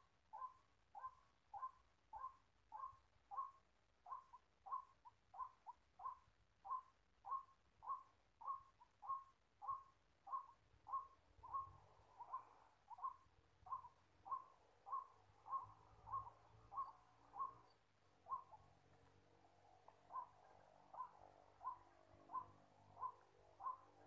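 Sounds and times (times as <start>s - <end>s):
waterhen calling: 21.0s - 24.0s.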